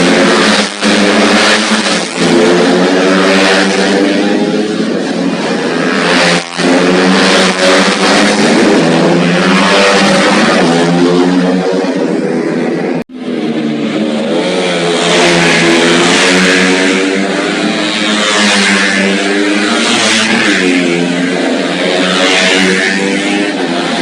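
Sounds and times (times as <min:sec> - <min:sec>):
racing motorcycle engines revving: 0:00.0 - 0:24.0.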